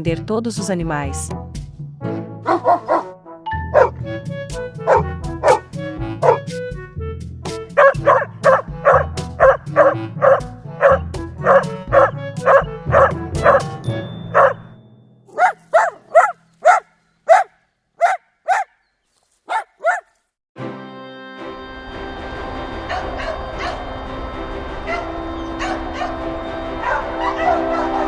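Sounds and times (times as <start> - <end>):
music with low pulsing beat: 0.0 - 2.9, 3.6 - 14.0
dog barking: 2.4 - 3.1, 3.7 - 4.0, 4.9 - 5.6, 6.2 - 6.4, 7.8 - 13.6, 14.3 - 14.6, 15.3 - 18.8, 19.4 - 20.2, 22.9 - 23.9, 24.8 - 28.0.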